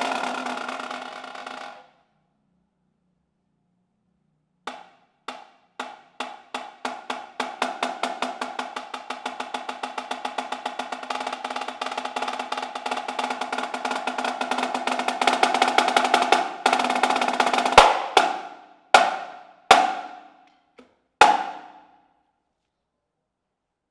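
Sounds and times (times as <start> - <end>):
marching snare drum solo: 0.0 - 1.8, 4.7 - 20.4, 21.2 - 21.8.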